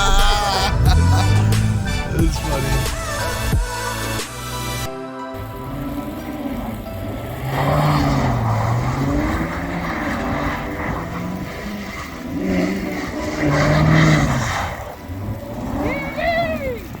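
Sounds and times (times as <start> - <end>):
car engine revving: 0.0 - 17.0
tyres spinning in snow: 5.4 - 17.0.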